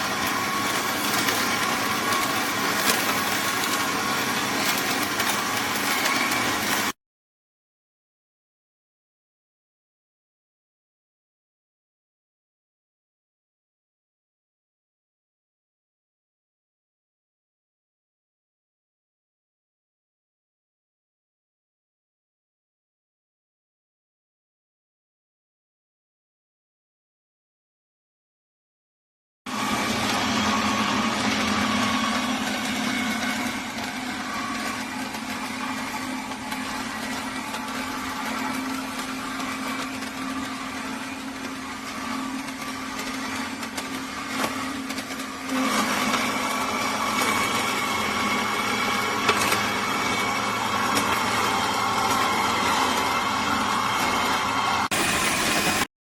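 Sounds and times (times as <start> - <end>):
juicer motor hum and whine: 0.0 - 7.0, 29.5 - 55.9.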